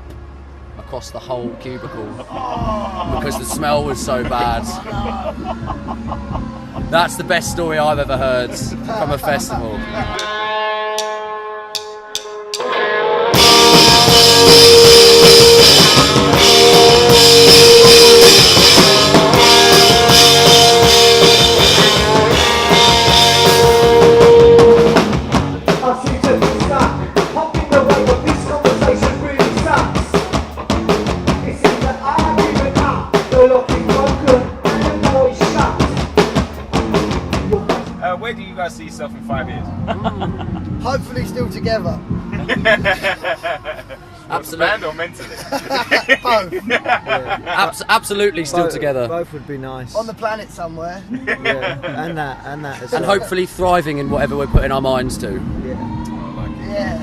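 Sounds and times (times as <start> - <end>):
steady drum beat: 2.4 - 43.8
punk rock band playing live: 8.1 - 38.0.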